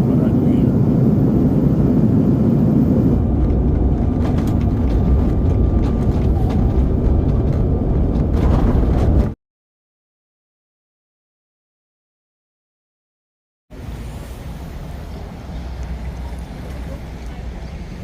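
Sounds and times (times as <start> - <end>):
vehicle rumbling: 0.0 - 9.4, 13.7 - 18.0.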